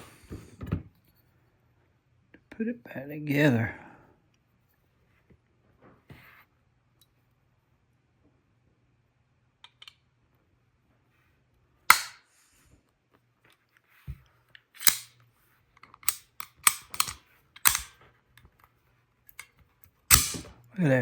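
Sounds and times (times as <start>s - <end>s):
knife blade metallic snaps: 14.8s - 15.1s, 16.0s - 17.9s, 20.1s - 20.5s.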